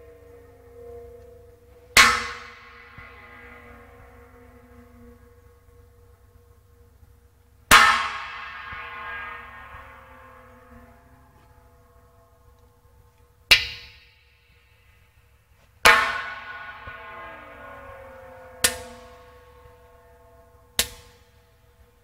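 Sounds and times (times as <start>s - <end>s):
bangs with ringing pipe echo: 0.0s - 22.0s.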